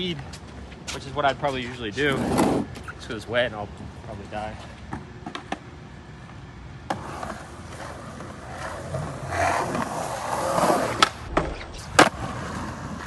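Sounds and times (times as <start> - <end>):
skateboard wheels rolling on wet pavement: 6.9 - 13.0
skateboard landing clack: 10.6 - 13.0
skateboard tail pop: 10.9 - 12.2.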